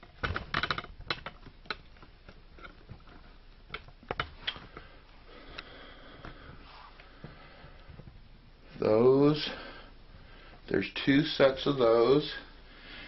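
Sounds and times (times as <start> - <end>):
clicks and knocks of handled equipment: 0.0 - 4.9.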